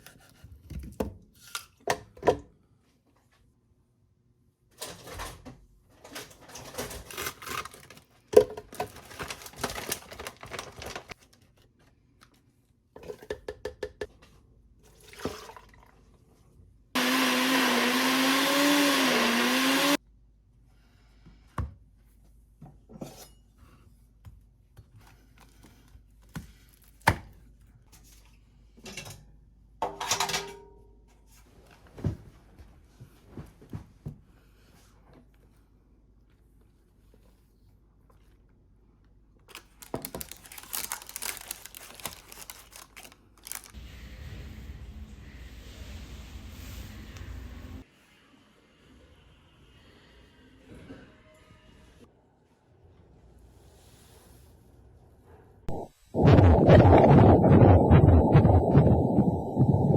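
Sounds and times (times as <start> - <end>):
electric blender running: 17.0 - 20.0
kitchen clicks and clatter: 28.8 - 30.8.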